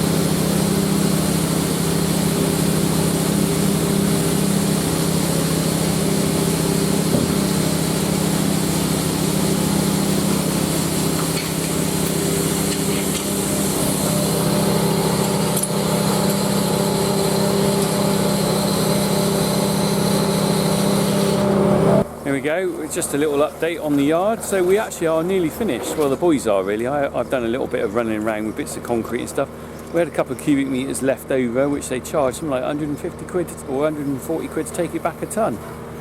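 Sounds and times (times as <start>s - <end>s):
engine running steadily: 0.0s - 36.0s.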